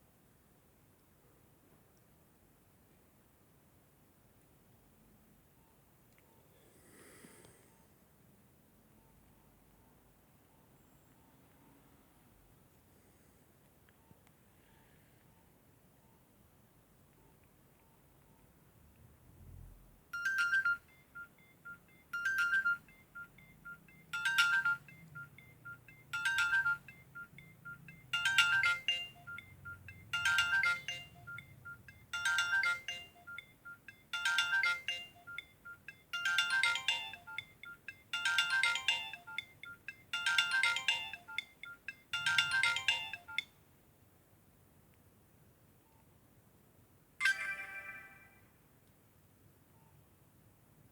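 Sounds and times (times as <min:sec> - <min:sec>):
mobile phone ringtone melody: 0:20.2 - 0:43.5, 0:47.2 - 0:48.6.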